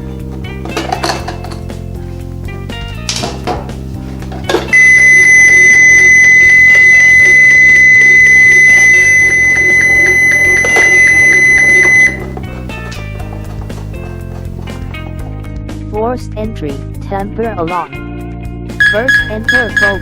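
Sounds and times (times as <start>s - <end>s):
keypad buzzer continuous high tone: 4.7s - 12.3s, 18.8s - 20.0s.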